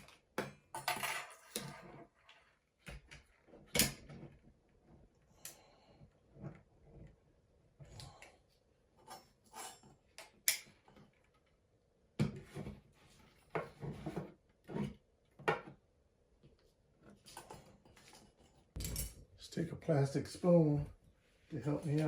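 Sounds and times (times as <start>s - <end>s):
tools clicking and knocking: 18.8s - 19.3s.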